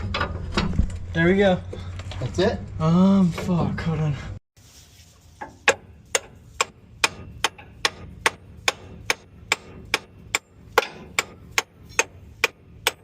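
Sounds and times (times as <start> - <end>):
hammer striking steel: 5.6 - 13.0.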